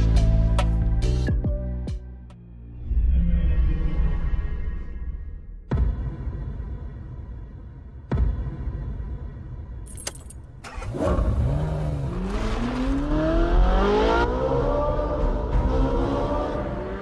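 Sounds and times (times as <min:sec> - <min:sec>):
car engine accelerating: 0:10.6 - 0:17.0.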